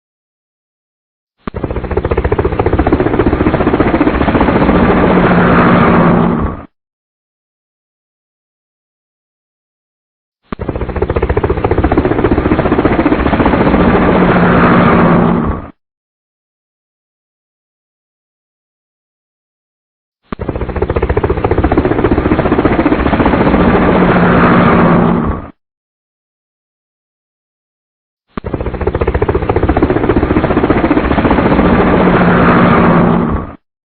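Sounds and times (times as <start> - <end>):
engine running with fast pulse: 1.4 - 6.7.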